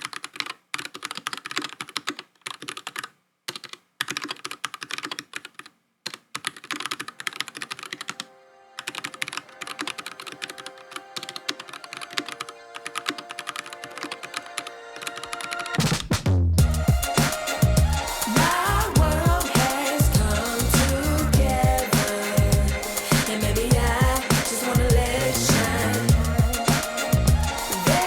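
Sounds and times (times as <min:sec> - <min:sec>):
mechanical keyboard typing: 0:00.0 - 0:08.2, 0:08.8 - 0:16.0.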